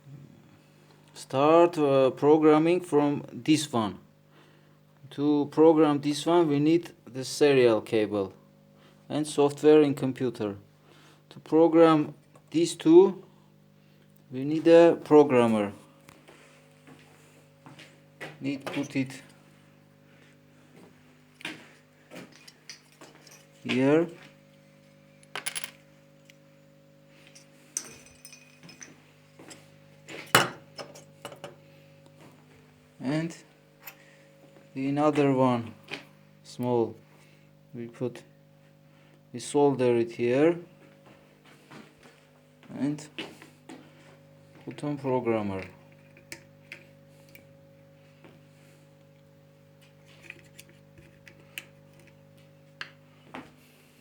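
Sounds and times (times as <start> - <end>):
steady electrical hum: 0.0 - 54.0
small hard objects clinking: 27.8 - 29.0.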